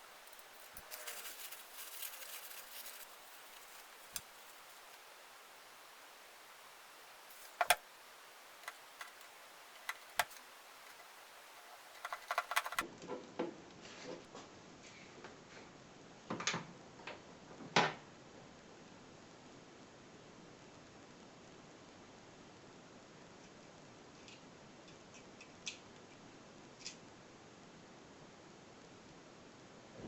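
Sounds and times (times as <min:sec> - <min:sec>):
rustling: 0:00.0 - 0:12.8
tools clicking and knocking: 0:08.6 - 0:12.8.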